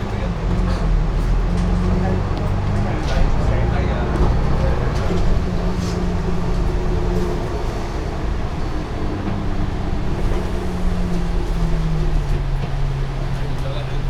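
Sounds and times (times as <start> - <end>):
bus engine humming: 0.0 - 14.0.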